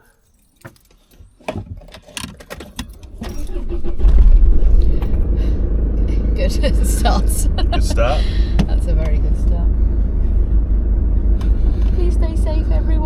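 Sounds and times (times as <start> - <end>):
keys jangling: 0.0 - 3.5
van engine starting and running: 0.0 - 13.0.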